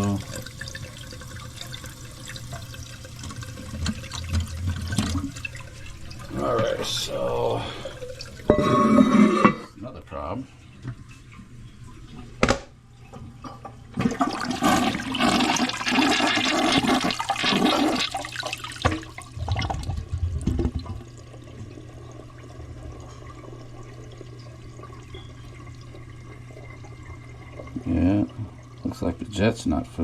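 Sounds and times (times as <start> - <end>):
toilet water rushing and gurgling: 0.0 - 9.5, 13.9 - 29.7.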